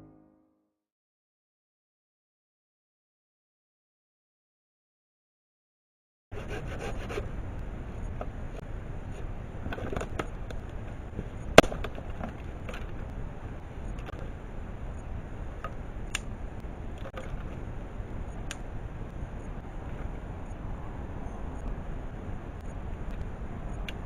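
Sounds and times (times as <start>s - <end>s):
steady low rumble: 7.2s - 24.0s
sharp crack: 11.6s - 12.2s.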